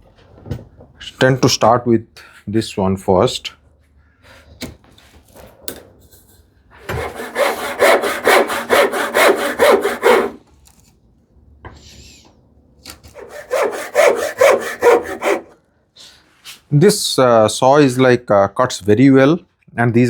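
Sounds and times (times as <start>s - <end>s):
hand saw cutting wood: 6.8s - 10.4s, 13.1s - 15.6s.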